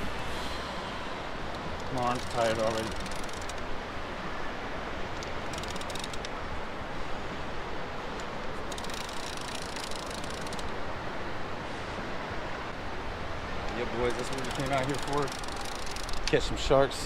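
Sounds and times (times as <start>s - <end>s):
wind: 0.0s - 17.0s
rapid fine clicking: 1.8s - 3.6s, 14.1s - 16.4s.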